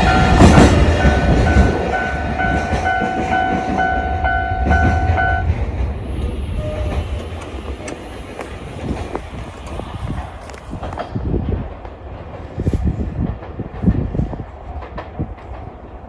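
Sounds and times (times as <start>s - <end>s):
level crossing alarm clanging: 0.0s - 5.6s, 6.6s - 8.0s
freight train rumbling: 0.0s - 16.0s.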